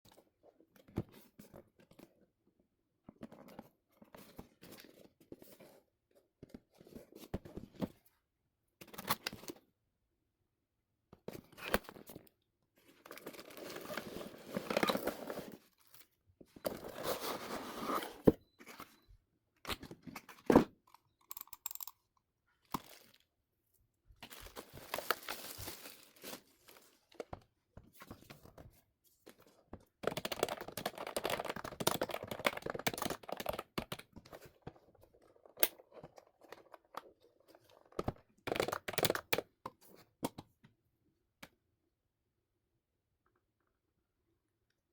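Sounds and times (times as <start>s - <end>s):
packaging rustling and tearing: 24.2s - 27.0s.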